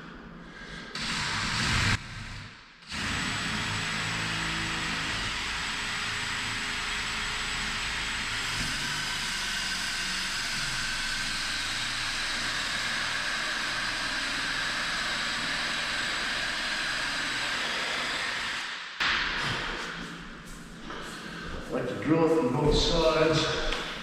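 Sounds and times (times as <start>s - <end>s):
power drill cutting wood: 1.0s - 18.7s.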